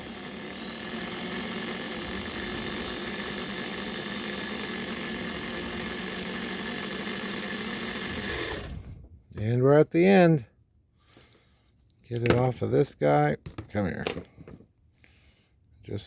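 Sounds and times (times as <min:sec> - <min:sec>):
small electric motor whirring: 0:00.0 - 0:09.0.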